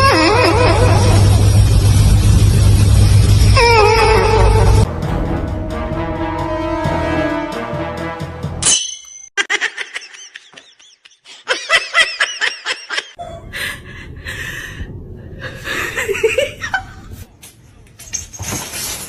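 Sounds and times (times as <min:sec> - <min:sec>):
high-pitched laughing: 0:09.4 - 0:13.8.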